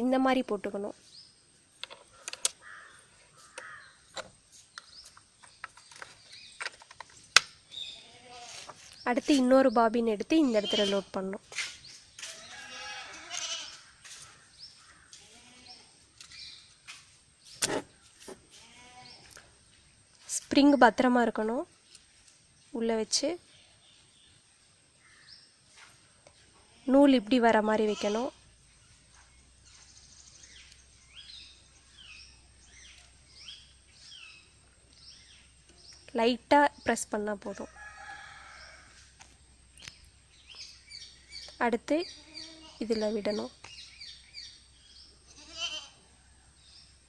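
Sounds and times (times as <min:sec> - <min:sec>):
animal bleating: 0:07.9 - 0:08.6, 0:10.5 - 0:11.1, 0:12.3 - 0:13.9, 0:15.1 - 0:15.9, 0:18.5 - 0:19.2, 0:27.8 - 0:28.4, 0:42.2 - 0:42.8, 0:45.3 - 0:46.0.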